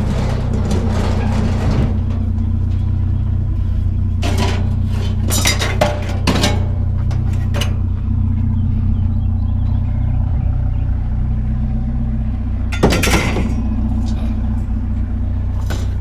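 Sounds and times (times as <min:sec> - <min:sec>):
scrap metal clattering: 0:00.0 - 0:07.9, 0:12.7 - 0:16.0
vehicle engine idling: 0:00.0 - 0:16.0.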